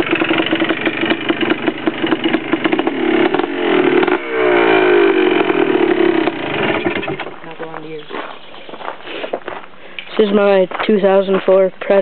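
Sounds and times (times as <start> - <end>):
two-stroke engine idling and revving: 0.0 - 7.8.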